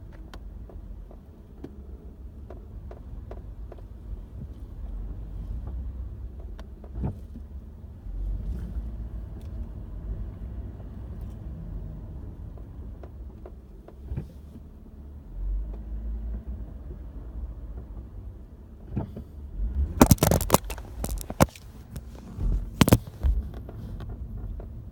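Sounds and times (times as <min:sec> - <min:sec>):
car engine rumble: 0:00.0 - 0:24.9
sharp knocks and clicks: 0:19.9 - 0:24.2.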